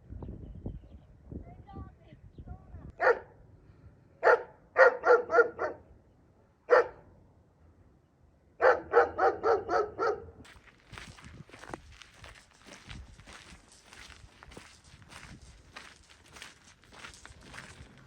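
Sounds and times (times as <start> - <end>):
dog barking: 3.0 - 3.4, 4.2 - 5.8, 6.7 - 7.1, 8.6 - 10.4.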